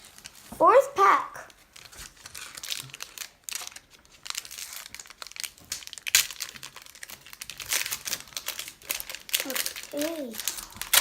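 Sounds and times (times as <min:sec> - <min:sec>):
wrapper tearing and crinkling: 0:00.0 - 0:00.5, 0:01.5 - 0:11.0.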